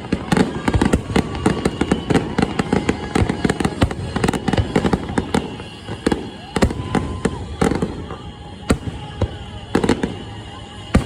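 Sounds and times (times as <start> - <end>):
faint whistling fireworks: 0.0 - 11.0
fireworks bangs and pops: 0.0 - 11.0.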